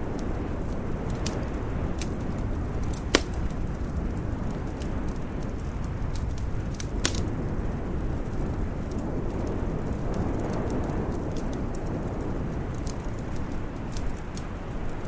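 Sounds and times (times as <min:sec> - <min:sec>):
fire popping: 0:00.0 - 0:15.0
wood fire crackling: 0:00.0 - 0:15.0.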